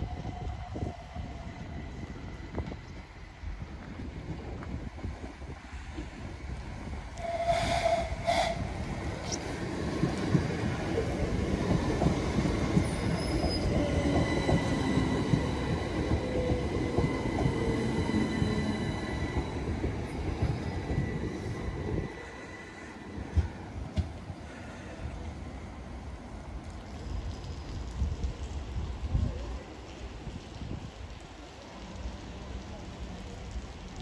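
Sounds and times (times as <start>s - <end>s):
train wheels rumbling on rails: 0.0s - 25.4s
thin high whistle: 7.2s - 9.4s.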